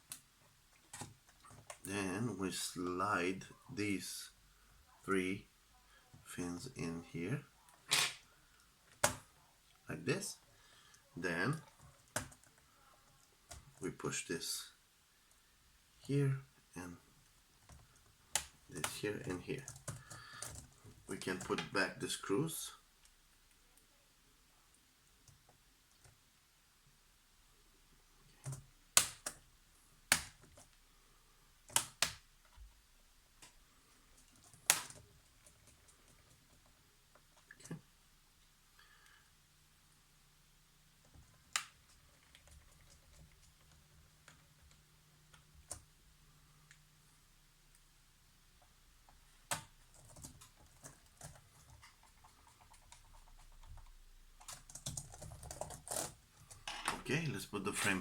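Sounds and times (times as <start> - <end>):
laptop parts clicking and tapping: 30.1 - 30.7, 31.7 - 32.3, 34.2 - 36.2, 49.4 - 57.0.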